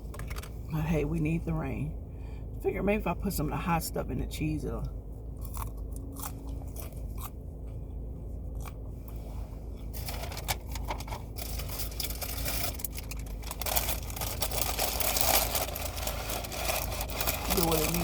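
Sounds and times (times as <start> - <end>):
car engine idling: 0.0 - 18.0
food packaging rustling: 9.9 - 18.0.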